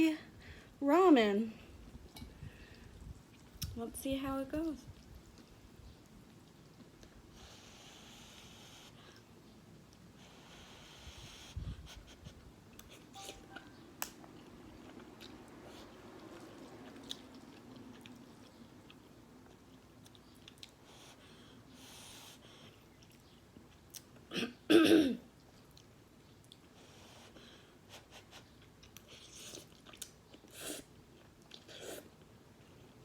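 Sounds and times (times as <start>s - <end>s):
person chewing: 14.3s - 20.8s, 28.6s - 32.1s
person coughing: 24.3s - 25.2s.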